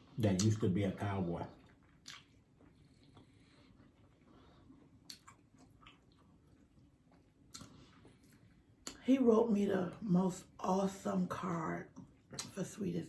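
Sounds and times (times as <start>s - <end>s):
faint chewing of food: 0.1s - 9.1s, 11.8s - 12.7s
soft mouth clicks: 2.0s - 2.4s, 5.0s - 6.2s, 7.5s - 7.8s.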